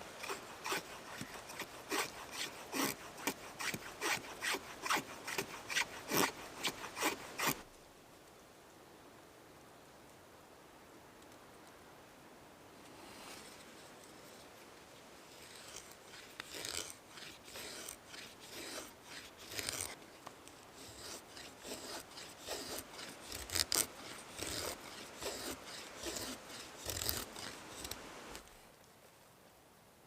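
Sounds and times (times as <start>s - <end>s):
knife blade scraping: 0.2s - 7.6s, 15.3s - 20.0s, 20.8s - 28.4s.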